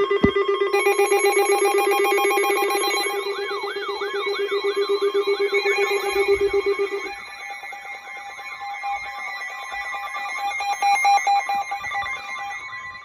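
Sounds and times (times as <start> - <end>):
pulsing electronic beeps: 0.0 - 7.9
lower pulsing beep: 0.0 - 12.5
warbling siren-like alarm tone: 0.0 - 13.0.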